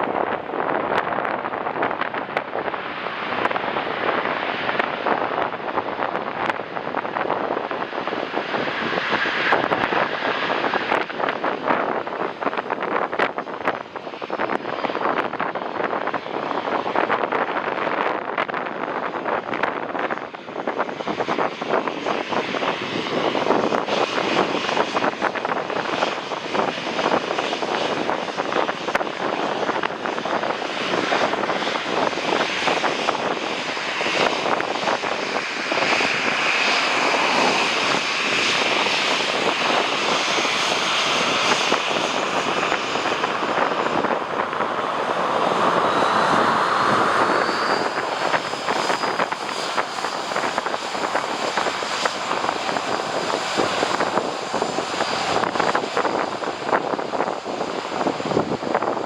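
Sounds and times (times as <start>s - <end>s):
jet airliner engines roaring: 0.0s - 59.0s
wind buffeting microphone: 0.0s - 59.0s.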